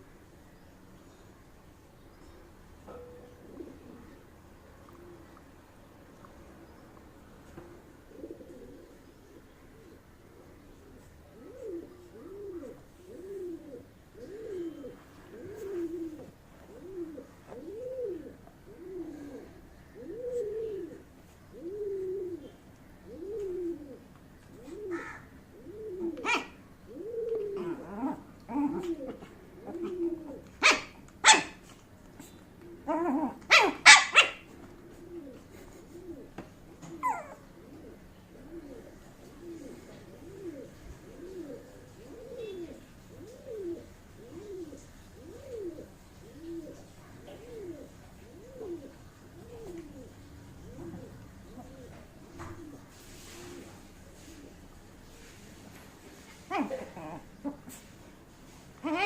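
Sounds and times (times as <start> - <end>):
puppy barking in sharp yaps: 26.2 - 26.6, 30.6 - 31.6, 33.5 - 34.4.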